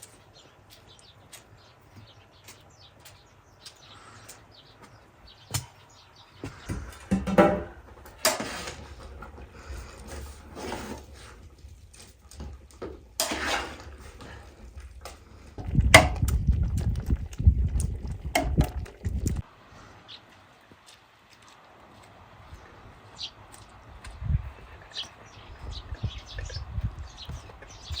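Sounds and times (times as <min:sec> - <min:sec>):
pots and utensils clattering: 0:06.6 - 0:11.3, 0:12.1 - 0:16.2
dense low rumble: 0:15.3 - 0:19.4, 0:23.9 - 0:28.0.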